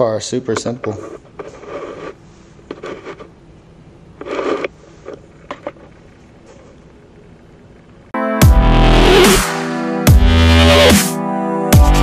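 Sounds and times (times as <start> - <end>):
plastic scraping: 0.6 - 3.4, 4.2 - 6.7.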